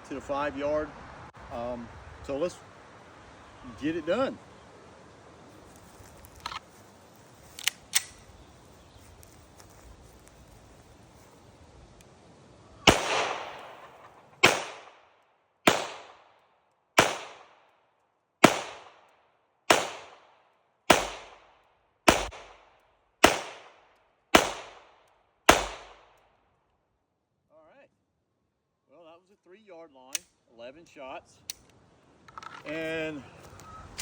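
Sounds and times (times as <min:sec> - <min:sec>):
pistol shots with echo: 0:12.9 - 0:16.3, 0:17.0 - 0:17.6, 0:18.4 - 0:19.1, 0:19.7 - 0:26.2.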